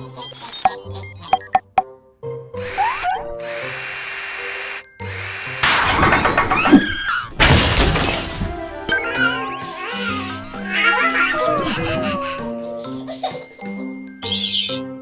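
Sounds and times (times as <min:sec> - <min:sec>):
light background music: 0:00.0 - 0:15.0
cartoon power drill whir: 0:02.6 - 0:12.6.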